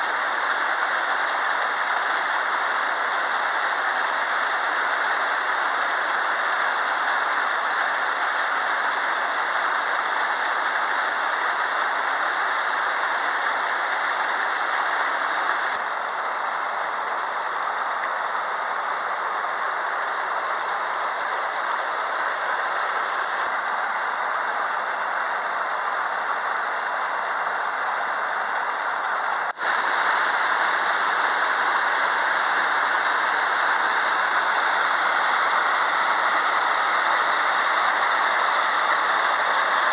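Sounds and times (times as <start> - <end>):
waterfall rushing: 29.2 - 39.9.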